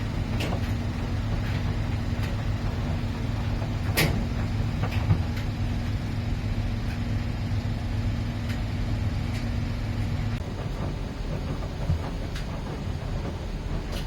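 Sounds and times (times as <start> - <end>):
washing machine motor hum: 0.0 - 14.0.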